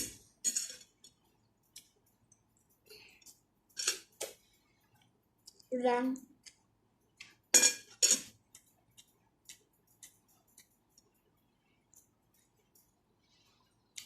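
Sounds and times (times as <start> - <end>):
faint eating clicks: 1.1 - 4.2, 4.9 - 7.4, 8.4 - 13.0.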